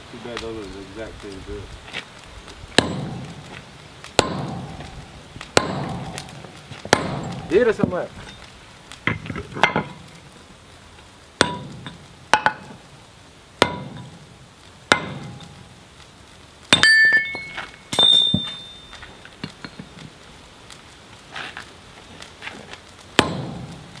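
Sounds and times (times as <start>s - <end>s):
hammer striking steel on anvil: 2.8s - 3.5s, 4.2s - 4.9s, 5.6s - 6.3s, 6.9s - 7.6s, 11.4s - 12.8s, 13.6s - 14.2s, 14.9s - 15.6s, 16.7s - 19.0s, 23.2s - 23.8s.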